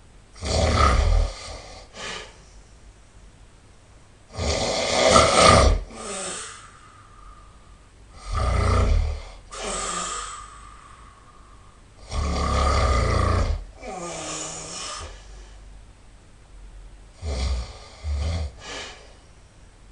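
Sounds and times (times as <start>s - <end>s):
person snoring loudly: 0.4s - 2.3s, 4.3s - 7.5s, 8.1s - 15.2s, 17.2s - 19.0s
soft breath: 1.8s - 2.9s, 5.9s - 8.0s, 9.2s - 12.0s, 13.8s - 15.7s, 18.6s - 19.6s.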